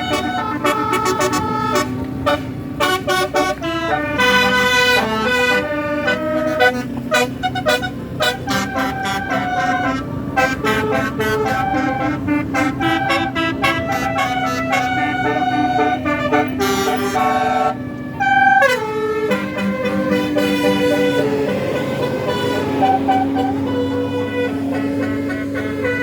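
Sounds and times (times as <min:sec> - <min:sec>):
bus engine running: 0:00.0 - 0:26.0
multi-tone bus horn tune: 0:00.0 - 0:26.0.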